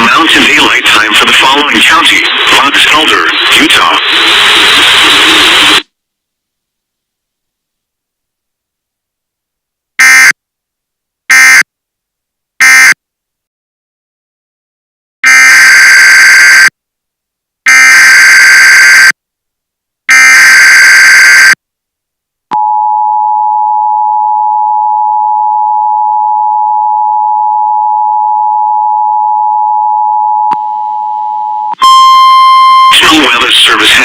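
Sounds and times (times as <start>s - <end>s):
two-tone attention signal: 22.6s - 33.2s.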